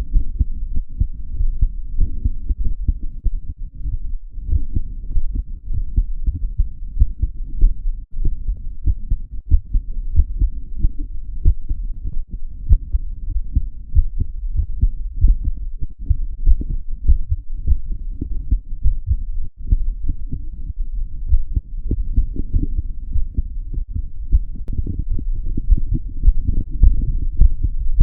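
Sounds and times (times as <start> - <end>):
muffled heartbeat thumps: 0.0 - 28.0.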